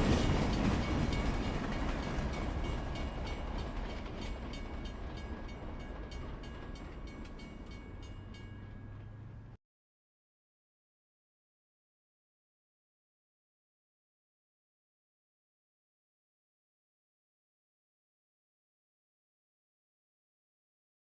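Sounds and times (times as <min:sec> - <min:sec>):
train running on rails: 0:00.0 - 0:09.6
wheels clicking over rail joints: 0:00.0 - 0:09.6.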